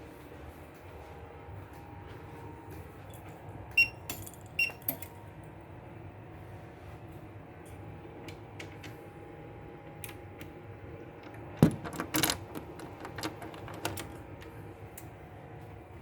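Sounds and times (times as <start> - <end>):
clicks and knocks: 11.2 - 14.2.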